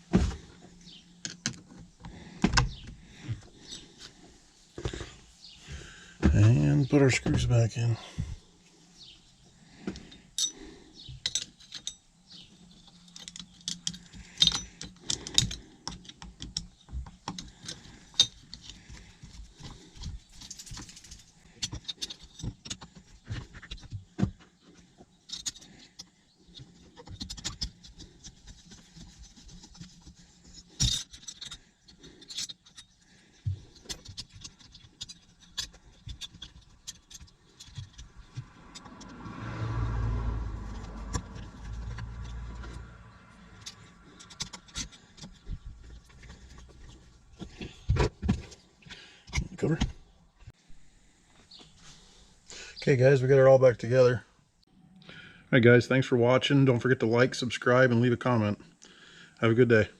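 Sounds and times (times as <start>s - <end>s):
screwdriver and screws clicking: 25.3s - 29.0s, 29.6s - 32.9s, 33.6s - 39.2s, 43.5s - 47.0s.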